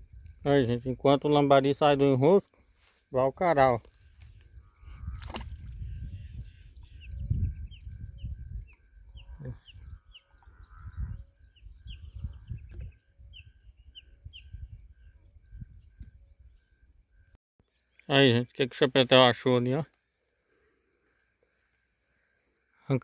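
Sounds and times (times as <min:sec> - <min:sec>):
birds chirping: 0:00.0 - 0:15.2
high insect hum: 0:00.0 - 0:23.0
low rumbling on microphone: 0:04.5 - 0:16.2.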